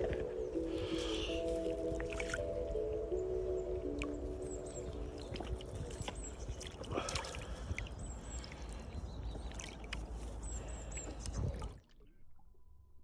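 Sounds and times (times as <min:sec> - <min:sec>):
water splashing and sloshing: 0:00.0 - 0:12.1.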